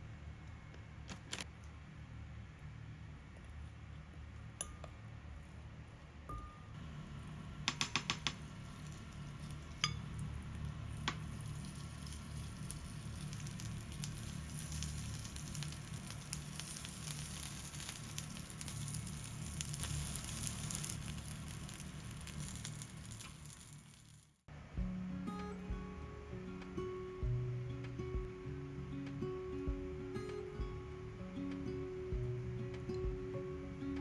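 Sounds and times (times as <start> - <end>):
pancake sizzling in a pan: 6.8 - 24.4.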